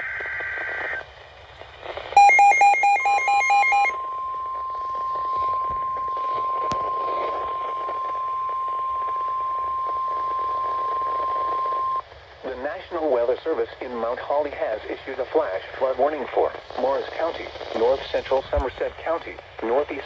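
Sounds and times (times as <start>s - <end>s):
radio static: 0.0s - 20.0s
quick alarm beeps: 2.2s - 12.0s
steady alarm tone: 2.2s - 12.0s
warbling data tones: 2.2s - 12.0s.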